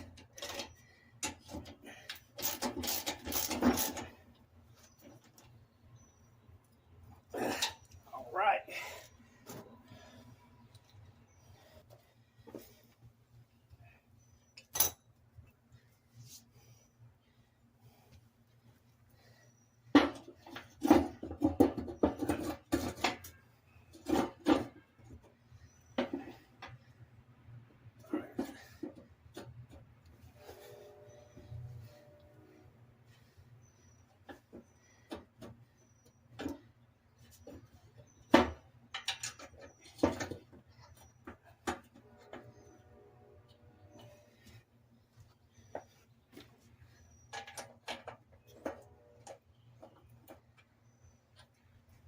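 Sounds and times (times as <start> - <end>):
tools and metal parts clunking: 0.0 - 5.6, 7.2 - 12.9, 14.4 - 15.5, 19.9 - 27.0, 28.0 - 32.2, 34.0 - 44.6, 45.6 - 50.7.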